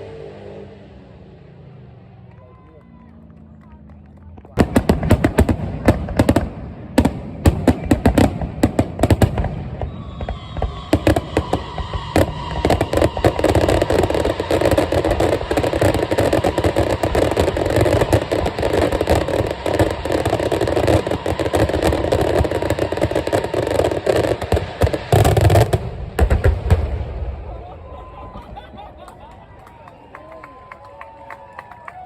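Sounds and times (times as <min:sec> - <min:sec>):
fireworks bangs and crackling: 0:02.8 - 0:31.1
faint whistle: 0:09.8 - 0:15.0.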